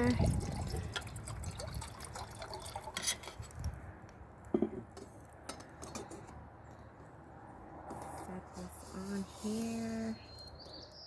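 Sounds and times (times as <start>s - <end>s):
water pouring into a container: 0.0s - 3.4s.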